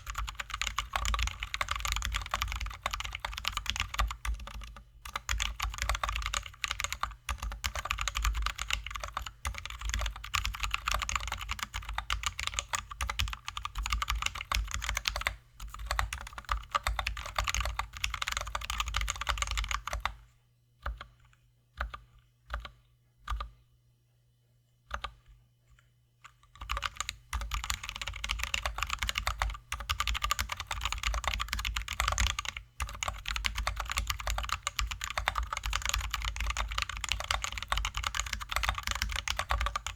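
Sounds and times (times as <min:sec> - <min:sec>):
fast typing on mechanical keyboard: 0:00.0 - 0:20.2, 0:26.6 - 0:39.9.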